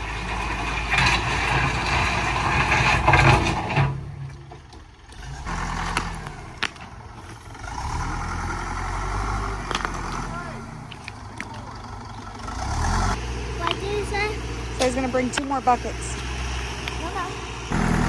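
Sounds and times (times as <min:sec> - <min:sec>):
vehicle engine running: 0:04.2 - 0:18.0.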